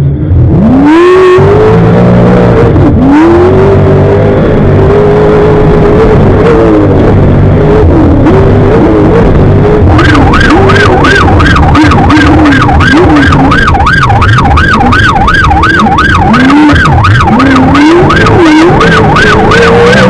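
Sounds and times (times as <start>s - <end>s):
race car engine revving: 0.0s - 20.0s
yelp siren wailing: 8.6s - 20.0s.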